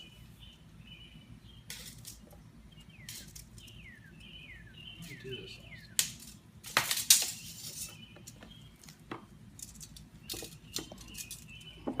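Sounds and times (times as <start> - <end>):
small hard objects clinking: 9.6 - 12.0.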